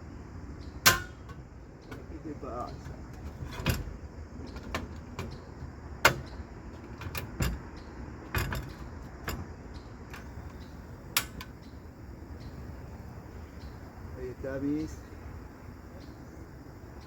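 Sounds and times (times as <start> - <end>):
faint steady hiss: 0.0 - 17.0
camp stove clicks and knocks: 0.8 - 11.7.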